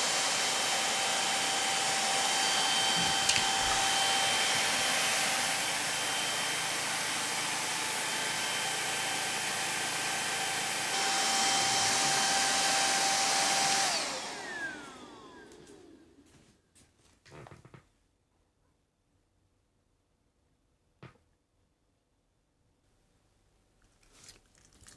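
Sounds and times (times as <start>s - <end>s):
vacuum cleaner motor running: 0.0s - 16.3s.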